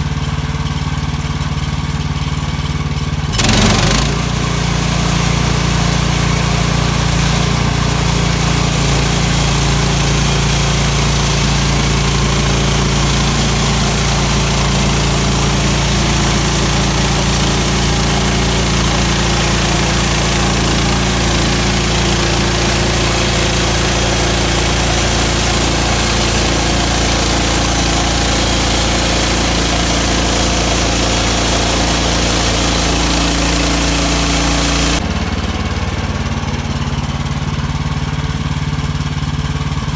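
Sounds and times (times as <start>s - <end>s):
gasoline engine running steadily: 0.0s - 39.9s.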